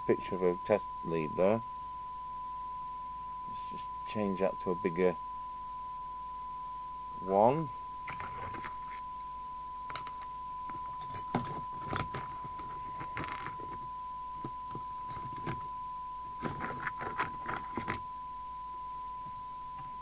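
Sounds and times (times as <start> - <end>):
steady radio test tone: 0.0 - 20.0
clicks and rattles of connectors: 9.8 - 10.3.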